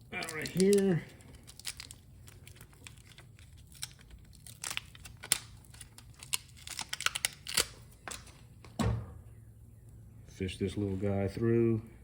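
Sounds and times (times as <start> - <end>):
tools clicking and crinkling: 0.1 - 8.8.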